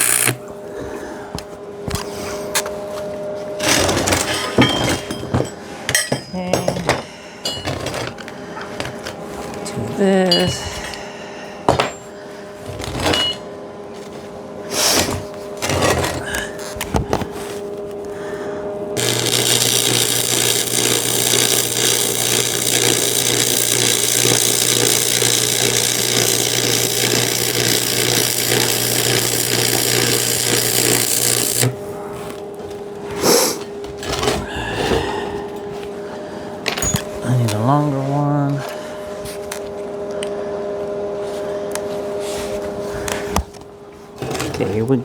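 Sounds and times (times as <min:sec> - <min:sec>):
welding arc hissing and crackling: 0:00.0 - 0:00.4, 0:19.0 - 0:31.8.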